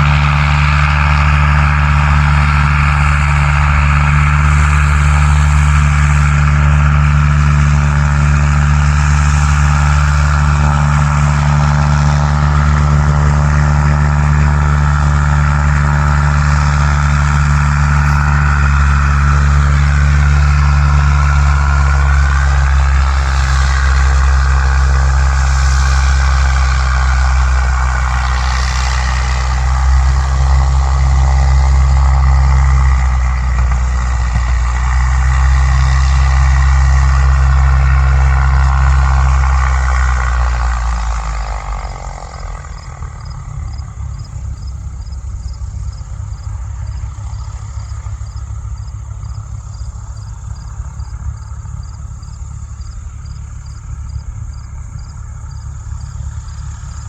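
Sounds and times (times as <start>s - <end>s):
propeller plane engine running: 0.0s - 57.0s
insects chirping: 41.2s - 57.0s.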